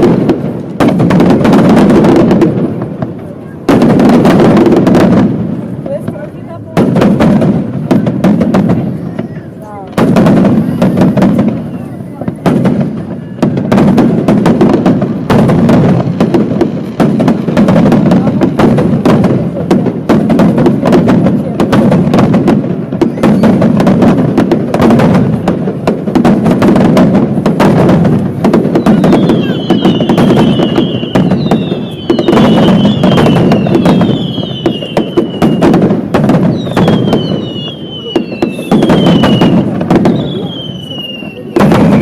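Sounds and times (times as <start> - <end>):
fireworks bangs: 0.0 - 42.0
fireworks rumble: 0.0 - 42.0
falling firework whistle: 8.9 - 12.2, 23.0 - 23.6, 28.6 - 42.0.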